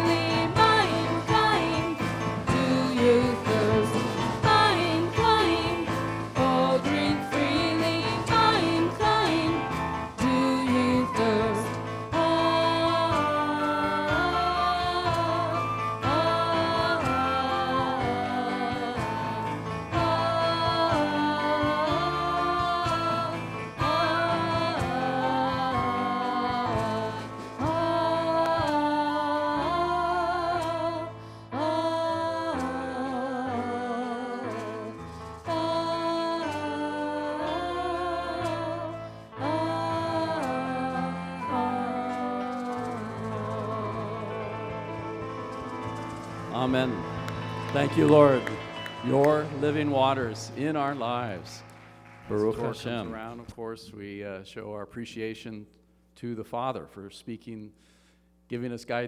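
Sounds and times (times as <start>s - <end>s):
singing: 0.0s - 45.1s
instrumental accompaniment: 0.0s - 53.7s.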